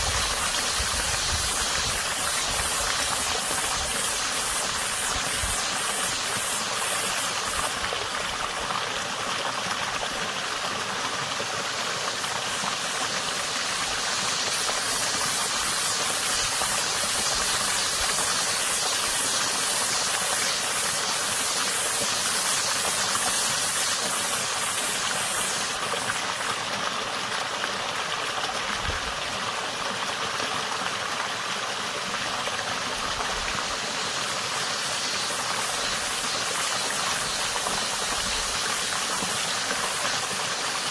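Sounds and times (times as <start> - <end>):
cicada buzzing: 0.0 - 8.6, 11.7 - 26.5, 33.5 - 40.9
creek water rushing: 0.0 - 40.9.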